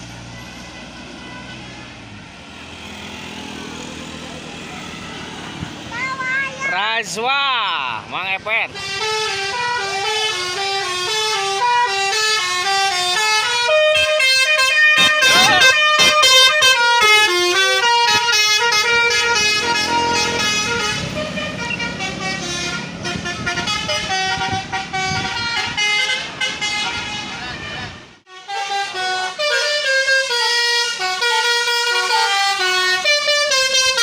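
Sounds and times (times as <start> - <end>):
bus air horn melody: 8.7 - 34.0.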